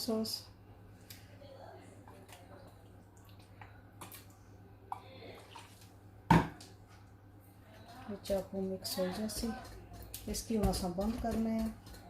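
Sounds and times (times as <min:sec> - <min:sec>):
faint clicks and taps: 0:07.9 - 0:12.0.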